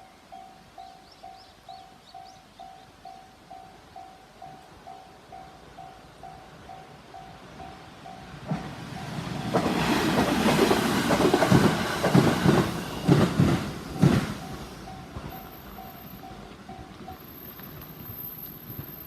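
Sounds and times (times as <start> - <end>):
level crossing warning bell: 0.0 - 9.4, 13.9 - 19.0
train rushing on rails: 0.0 - 19.0
train wheel clacks: 8.1 - 19.0.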